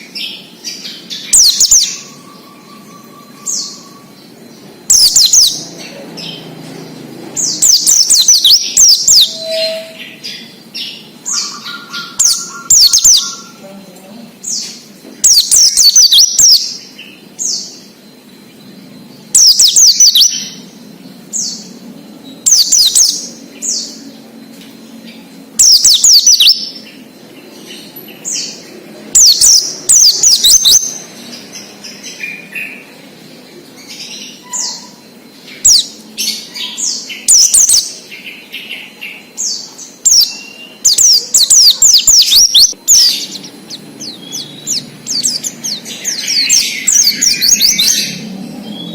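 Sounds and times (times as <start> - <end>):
bird chirping song: 0.0 - 48.9.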